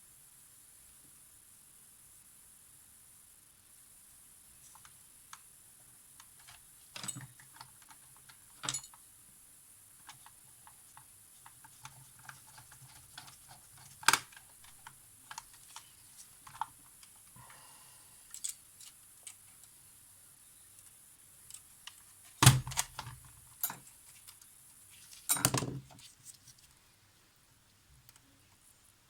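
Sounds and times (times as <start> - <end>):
light clicks of small tools: 18.3 - 19.8.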